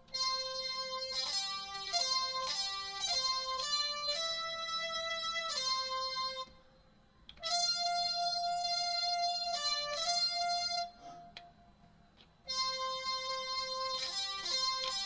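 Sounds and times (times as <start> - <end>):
digital wind instrument held notes: 12.5 - 15.0.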